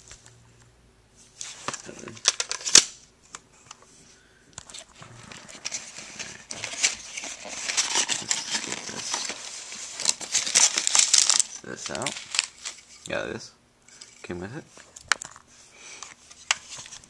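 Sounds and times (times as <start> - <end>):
packaging rustling and clicking: 1.4 - 3.8, 4.6 - 13.1.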